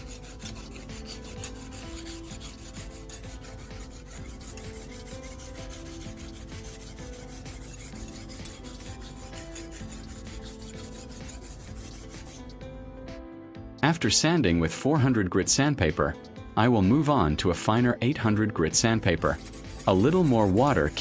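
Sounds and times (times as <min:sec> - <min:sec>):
knife scraping on sandpaper: 0:00.0 - 0:12.6, 0:19.0 - 0:21.0.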